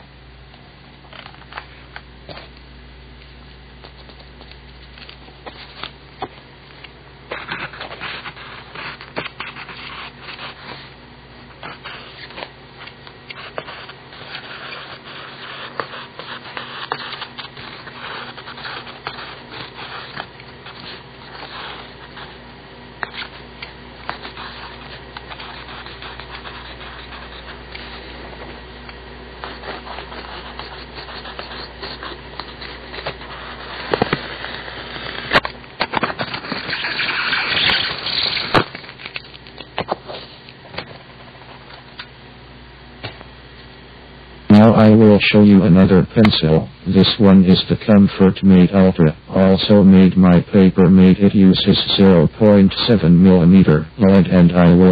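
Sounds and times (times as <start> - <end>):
pencil scratching on paper: 7.3 - 10.9, 11.6 - 22.4, 23.1 - 28.0, 29.4 - 35.2.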